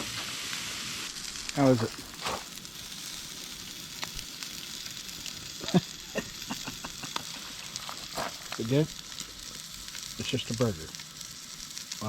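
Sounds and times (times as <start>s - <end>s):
burgers sizzling on a grill: 0.0s - 12.0s
small pops and clicks: 4.0s - 4.3s, 6.9s - 10.1s.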